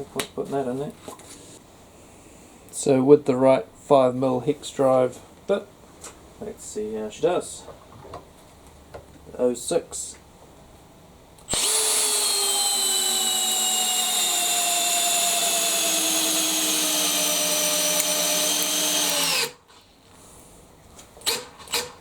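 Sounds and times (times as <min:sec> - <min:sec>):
drill motor whining: 0:11.5 - 0:19.6.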